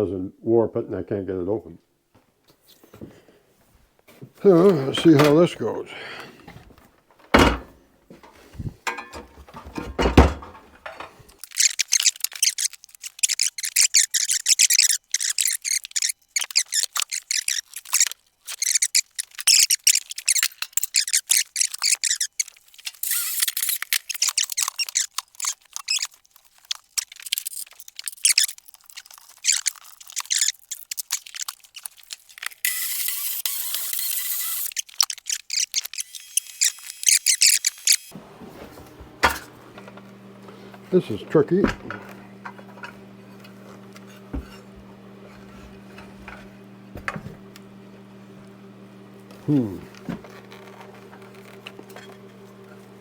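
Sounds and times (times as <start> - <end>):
wooden boards and nails squeaking: 6.2 - 26.2, 26.8 - 47.5, 49.5 - 52.3
knocks: 8.9 - 11.2.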